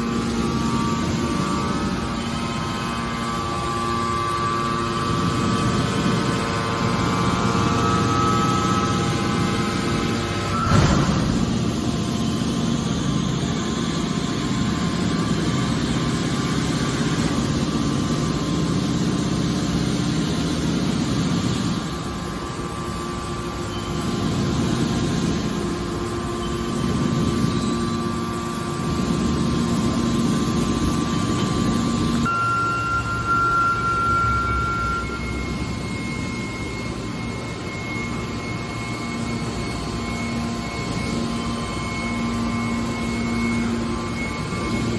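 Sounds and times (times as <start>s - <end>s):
hydraulic baler motor humming: 0.0s - 22.6s.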